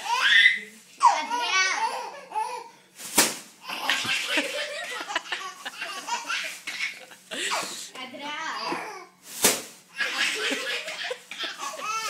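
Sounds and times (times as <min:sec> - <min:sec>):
baby laughing: 0:03.6 - 0:07.8, 0:10.0 - 0:12.0.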